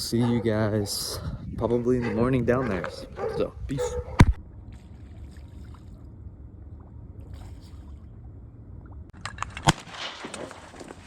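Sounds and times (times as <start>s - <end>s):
shotgun shot: 9.6s - 10.4s.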